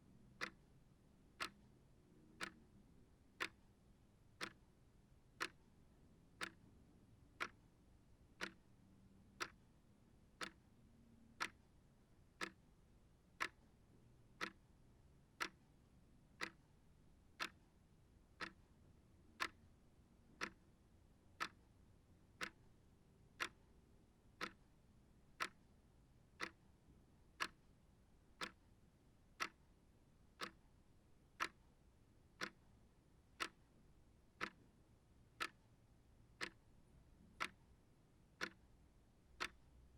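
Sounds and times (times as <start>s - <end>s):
clock ticking: 0.4s - 0.6s, 1.4s - 1.6s, 2.4s - 2.7s, 3.4s - 3.6s, 4.4s - 4.6s, 5.4s - 5.7s, 6.4s - 6.6s, 7.4s - 7.6s, 8.4s - 8.7s, 9.4s - 9.7s, 10.4s - 10.6s, 11.4s - 11.6s, 12.4s - 12.6s, 13.4s - 13.7s, 14.4s - 14.7s, 15.4s - 15.6s, 16.4s - 16.8s, 17.4s - 17.6s, 18.4s - 18.7s, 19.4s - 19.7s, 20.4s - 20.7s, 21.4s - 21.7s, 22.4s - 22.7s, 23.4s - 23.7s, 24.4s - 24.7s, 25.4s - 25.7s, 26.4s - 26.8s, 27.4s - 27.7s, 28.4s - 28.6s, 29.4s - 29.7s, 30.4s - 30.7s, 31.4s - 31.7s, 32.4s - 32.7s, 33.4s - 33.8s, 34.4s - 34.7s, 35.4s - 35.7s, 36.4s - 36.7s, 37.4s - 37.8s, 38.4s - 38.8s, 39.4s - 39.7s.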